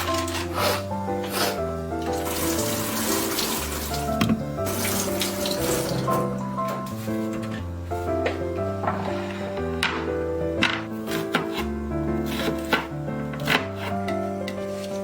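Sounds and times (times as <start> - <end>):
background music: 0.0 - 15.0
water running from a tap: 2.0 - 6.5.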